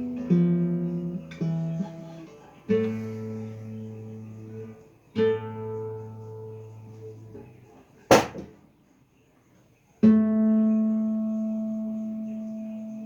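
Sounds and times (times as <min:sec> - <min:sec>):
acoustic guitar chords: 0:00.0 - 0:08.6, 0:10.0 - 0:13.0
sharp knock: 0:08.1 - 0:08.6.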